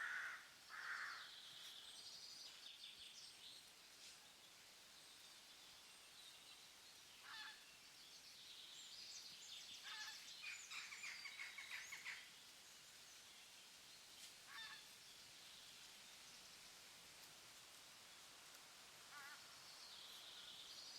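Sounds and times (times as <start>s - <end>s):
wild birds calling: 0.0s - 1.3s
forest ambience: 0.0s - 20.9s.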